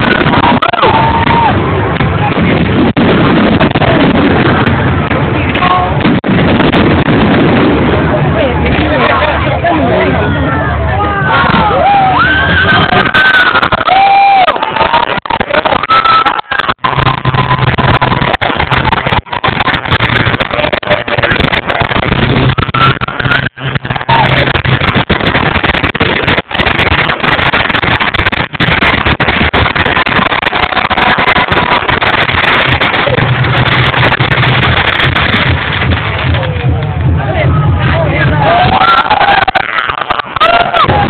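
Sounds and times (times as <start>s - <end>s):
fireworks bangs and crackles: 0.0s - 10.2s, 11.2s - 41.0s.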